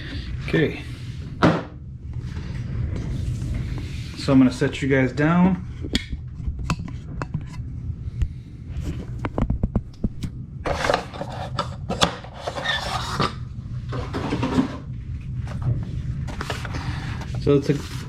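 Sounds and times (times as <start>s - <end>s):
packaging rustling and scraping: 10.6s - 14.8s, 16.2s - 18.0s.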